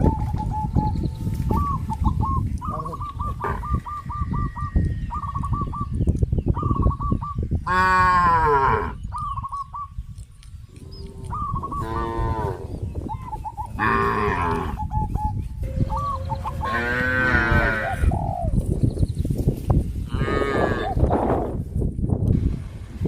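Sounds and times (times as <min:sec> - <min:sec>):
cows mooing: 0:10.9 - 0:12.8, 0:13.7 - 0:14.8, 0:15.9 - 0:18.1, 0:20.1 - 0:21.0.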